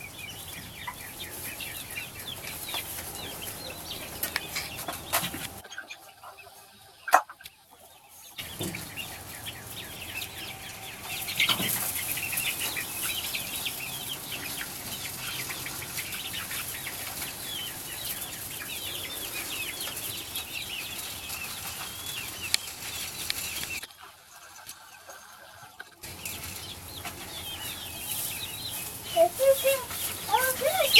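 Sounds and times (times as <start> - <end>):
chickens calling: 0.0 - 30.9.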